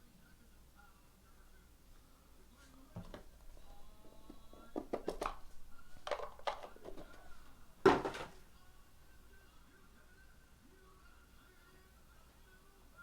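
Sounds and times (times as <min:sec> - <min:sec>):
cards and packaging rustling: 0:03.0 - 0:08.4
loud thunk: 0:07.8 - 0:08.4.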